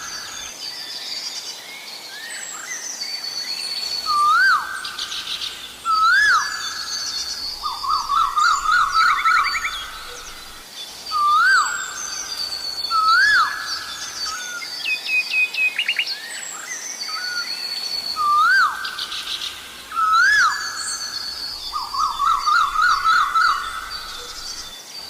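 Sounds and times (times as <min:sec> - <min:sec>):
small birds chirping: 0:00.0 - 0:25.0.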